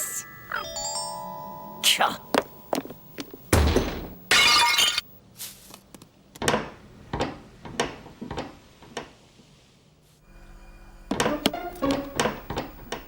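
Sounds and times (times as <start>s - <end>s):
heavy thud: 3.5s - 4.2s
glass shattering: 3.6s - 5.1s.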